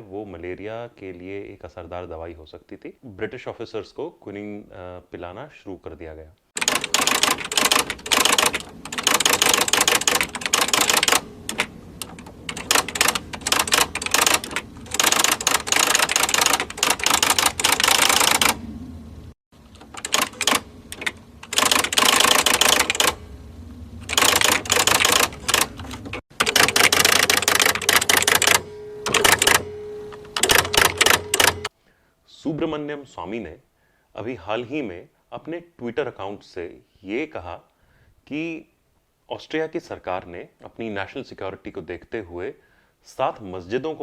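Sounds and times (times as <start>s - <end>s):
typewriter typing: 6.6s - 18.6s, 19.6s - 23.2s, 24.0s - 31.7s
steady tone: 26.5s - 31.7s.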